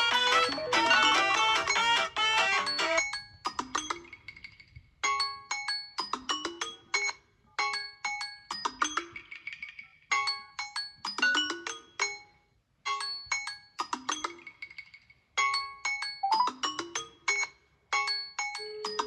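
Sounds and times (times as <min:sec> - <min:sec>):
marimba-like phone ringtone: 0:00.0 - 0:03.2, 0:15.7 - 0:17.5.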